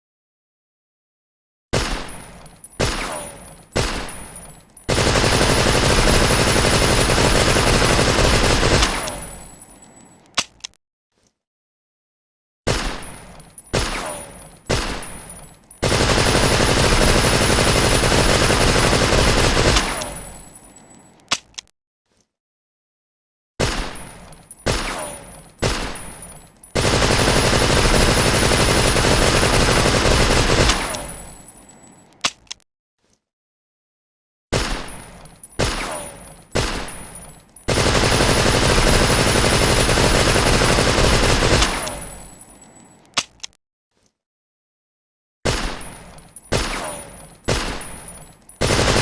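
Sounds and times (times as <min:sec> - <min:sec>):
submachine gun firing: 0:03.8 - 0:09.4, 0:15.8 - 0:20.3, 0:26.8 - 0:31.3, 0:37.7 - 0:42.3, 0:46.5 - 0:49.0.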